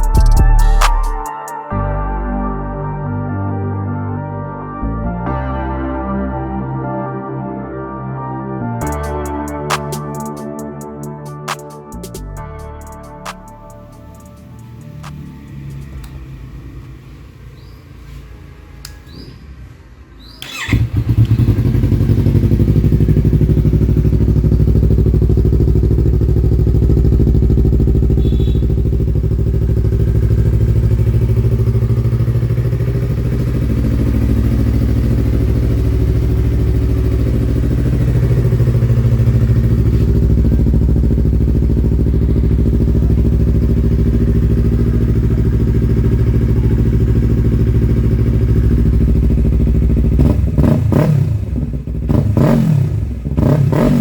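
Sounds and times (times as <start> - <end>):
motorcycle engine idling: 20.4 - 53.6.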